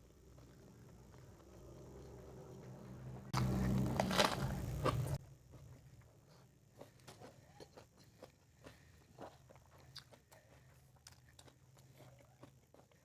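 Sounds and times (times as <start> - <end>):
person chewing: 0.0 - 5.2, 6.2 - 13.0
low hum: 0.0 - 6.0.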